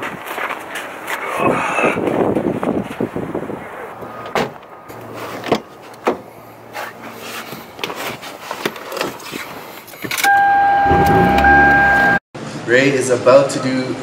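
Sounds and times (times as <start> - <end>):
electronic beep tone: 10.3 - 12.2.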